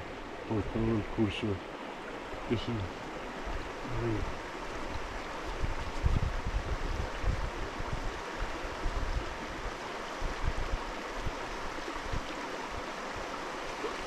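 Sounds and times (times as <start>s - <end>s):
mountain stream rushing: 0.0s - 14.0s.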